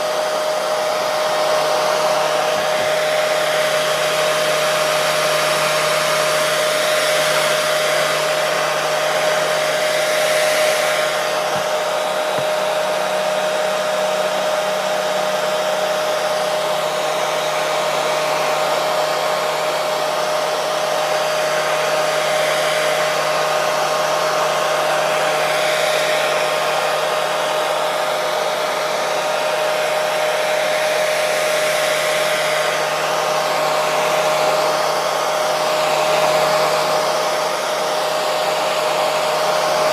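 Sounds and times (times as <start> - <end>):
hair dryer blowing and humming: 0.0 - 39.9.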